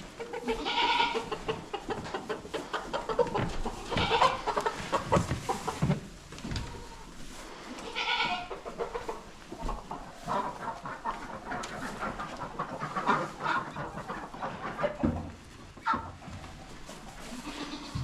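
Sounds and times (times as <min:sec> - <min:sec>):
chickens squawking: 0:00.0 - 0:18.0
rustling and knocking: 0:01.4 - 0:07.3.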